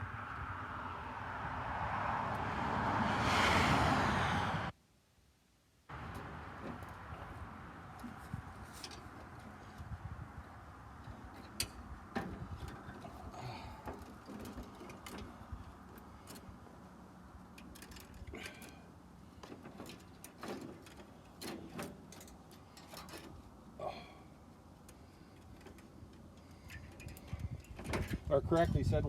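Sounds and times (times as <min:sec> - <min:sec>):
wire rope clinking and scraping: 0:05.9 - 0:10.0, 0:10.9 - 0:23.8, 0:24.6 - 0:28.8.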